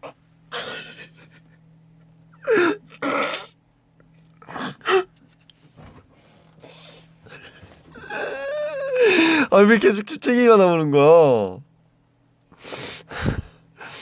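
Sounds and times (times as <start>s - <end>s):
gasping in-breath: 6.6s - 9.5s, 12.6s - 14.0s.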